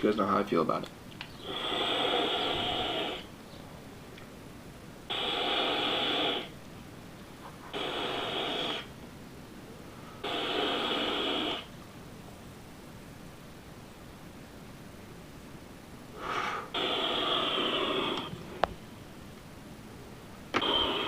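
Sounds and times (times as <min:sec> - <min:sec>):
vape puff hiss: 0:01.3 - 0:03.3, 0:05.1 - 0:06.6, 0:07.6 - 0:08.9, 0:10.2 - 0:11.7, 0:16.1 - 0:18.7, 0:20.5 - 0:21.0.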